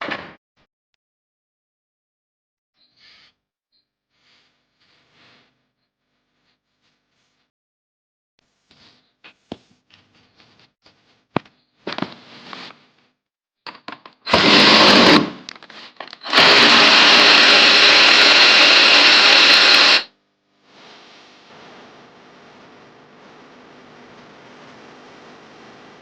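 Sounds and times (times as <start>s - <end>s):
handheld power tool running: 14.3s - 15.5s, 16.2s - 20.1s.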